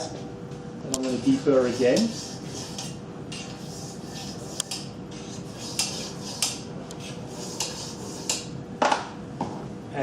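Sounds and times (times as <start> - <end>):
stone rubbing along skate blade: 1.6 - 8.5.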